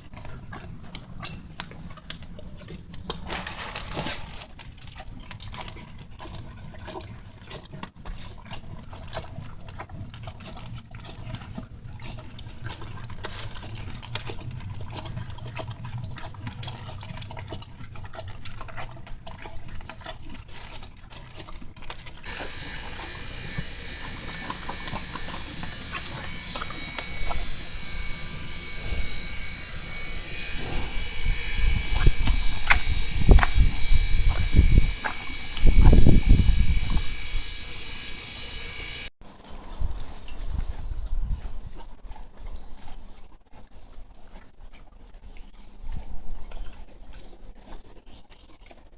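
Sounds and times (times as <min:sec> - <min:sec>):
horse chewing feed: 0:00.0 - 0:48.9
high-pitched ringing drone: 0:22.2 - 0:39.1.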